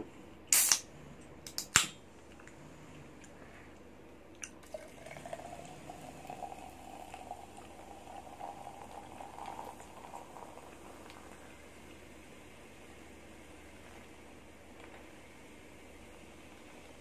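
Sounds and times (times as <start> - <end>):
can click: 0.5 - 0.8
soda pouring and fizzing: 4.6 - 12.0.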